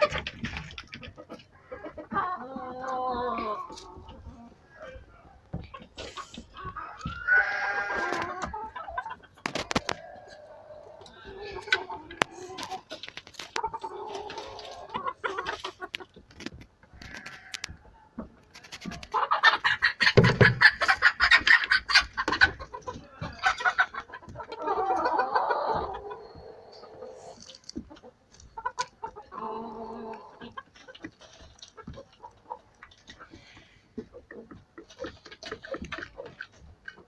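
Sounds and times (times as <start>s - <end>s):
chickens clucking: 0.0s - 37.0s
chicken squawking: 5.7s - 13.0s, 18.6s - 27.7s.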